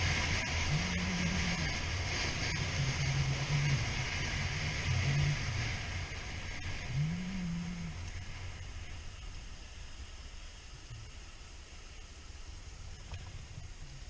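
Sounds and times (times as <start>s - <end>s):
motorcycle engine running: 0.0s - 8.5s
steady wind noise: 0.0s - 14.0s.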